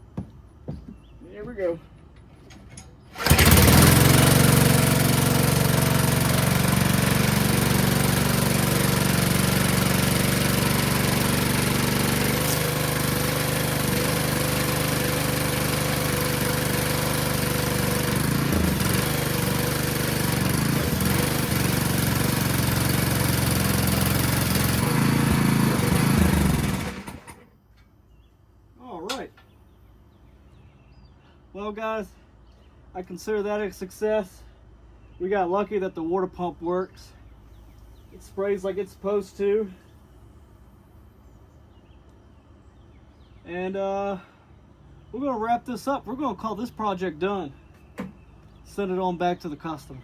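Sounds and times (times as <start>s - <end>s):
pressure washer engine running: 3.2s - 27.4s
water pump spraying: 3.2s - 27.4s.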